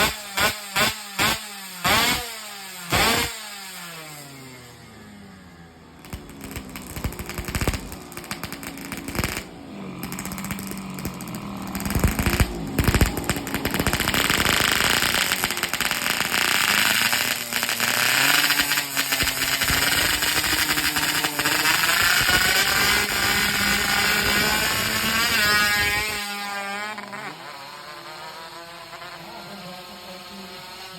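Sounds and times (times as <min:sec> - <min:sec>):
motorcycle engine revving roughly: 0:00.0 - 0:30.9
popping exhaust: 0:05.7 - 0:29.9.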